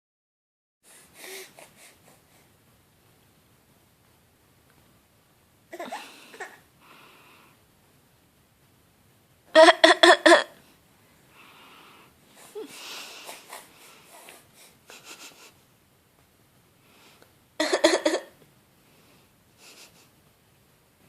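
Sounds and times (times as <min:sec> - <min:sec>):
baby breathing and wheezing: 0:00.8 - 0:02.6, 0:05.7 - 0:06.6, 0:11.5 - 0:15.3
baby fake coughing: 0:09.6 - 0:10.6, 0:17.6 - 0:18.3.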